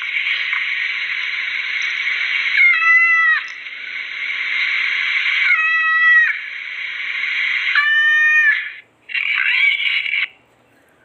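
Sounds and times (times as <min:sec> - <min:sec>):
steady hiss: 0:00.0 - 0:07.8
cat meowing: 0:02.6 - 0:03.5, 0:07.7 - 0:08.8.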